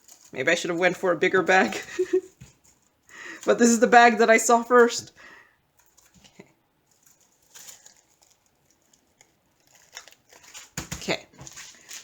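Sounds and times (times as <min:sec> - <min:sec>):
plastic bag rustling: 0:00.0 - 0:05.2, 0:05.8 - 0:12.0.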